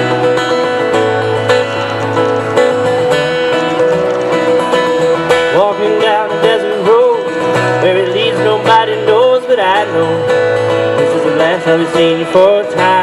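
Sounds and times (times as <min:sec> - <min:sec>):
wavering sliding melody: 0:00.0 - 0:06.2
acoustic guitar playing: 0:00.0 - 0:13.0.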